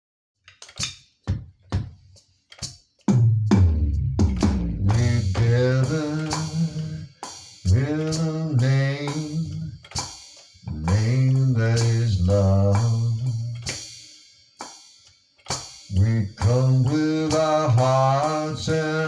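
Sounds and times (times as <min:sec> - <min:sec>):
drum kit: 0:00.6 - 0:19.0
heavy low bass: 0:03.1 - 0:09.9, 0:10.7 - 0:13.7, 0:15.9 - 0:19.0.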